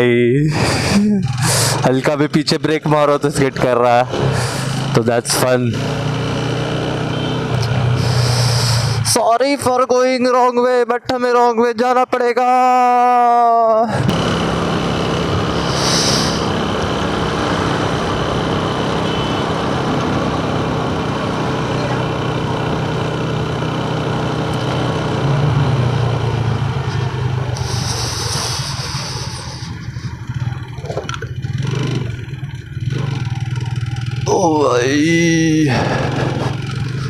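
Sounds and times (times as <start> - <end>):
motorcycle engine running: 0.6 - 9.2, 13.9 - 37.0
short high hisses: 8.0 - 9.0, 15.6 - 16.5, 27.6 - 29.9.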